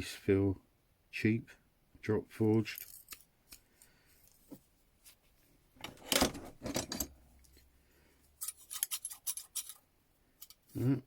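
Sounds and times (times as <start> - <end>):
light metallic clicks and jingles: 2.4 - 4.4
metal hand tools clinking: 8.4 - 9.8.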